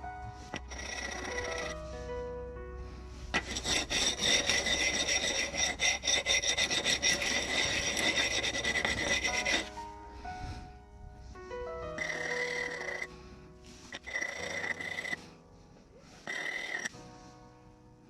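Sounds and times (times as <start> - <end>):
file scraping back and forth: 0.0 - 2.2, 2.9 - 10.7, 11.4 - 17.3
background music: 0.0 - 18.0.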